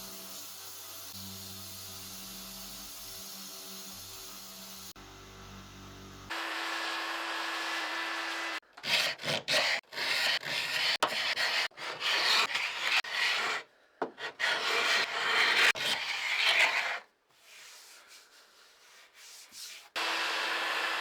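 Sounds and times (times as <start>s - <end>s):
whirring with low hum: 0.0s - 6.7s
sanding wood strokes: 14.2s - 18.1s.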